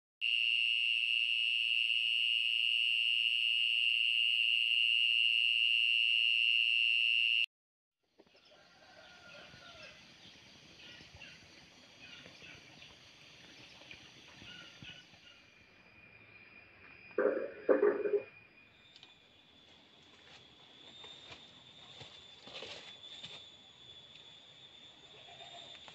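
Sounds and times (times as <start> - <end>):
loud high-pitched tone: 17.2 - 18.3
small animals chirping: 17.2 - 18.3.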